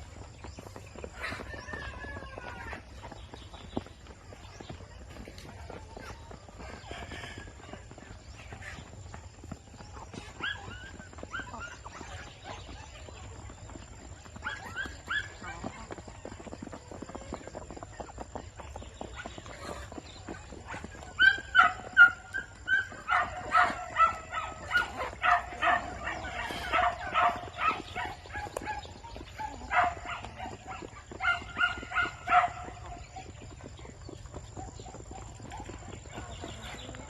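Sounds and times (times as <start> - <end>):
peafowl honking calls: 21.2 - 32.8.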